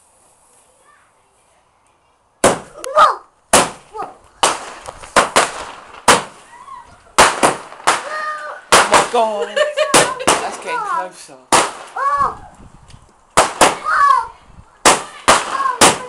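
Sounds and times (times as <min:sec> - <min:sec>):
fireworks bangs: 0:02.4 - 0:02.8, 0:03.5 - 0:10.9, 0:11.5 - 0:12.4, 0:13.4 - 0:16.0.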